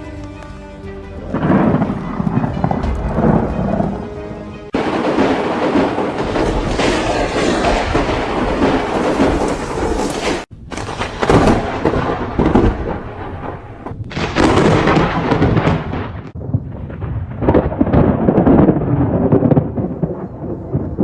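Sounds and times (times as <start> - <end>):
thunder rumbling: 1.2 - 21.0
heavy rain hissing: 4.8 - 16.0.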